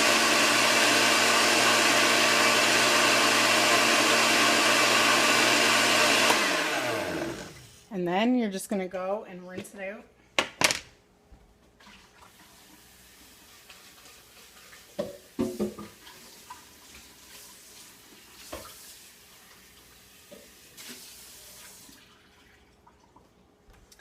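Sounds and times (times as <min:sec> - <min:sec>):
tap water running: 0:11.8 - 0:23.4.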